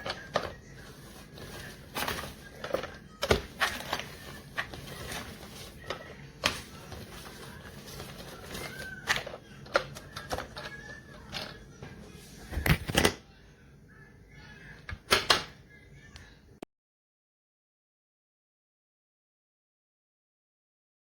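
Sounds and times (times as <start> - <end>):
plastic squeaks: 0.0 - 11.6.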